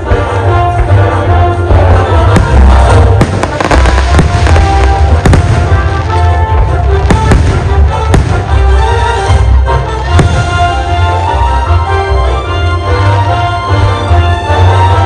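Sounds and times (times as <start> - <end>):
fireworks bangs: 1.7 - 11.4.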